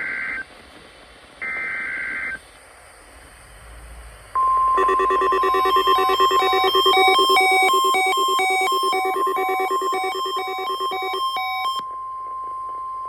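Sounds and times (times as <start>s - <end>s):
data burst: 4.4s - 11.8s
overlapping repeating alarm beeps: 4.4s - 11.8s
warning alarm tone: 4.4s - 11.8s.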